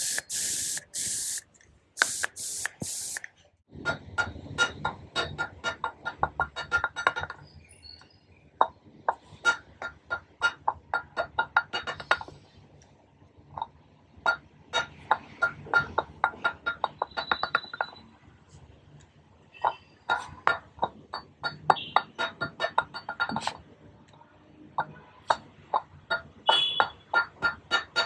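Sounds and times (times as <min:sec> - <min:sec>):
trigger spray bottle squirting: 0:00.0 - 0:03.3.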